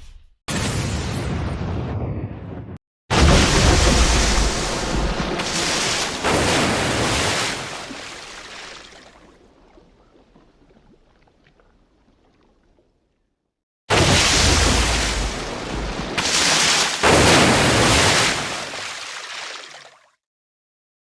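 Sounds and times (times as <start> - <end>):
explosion: 0.5 - 7.4.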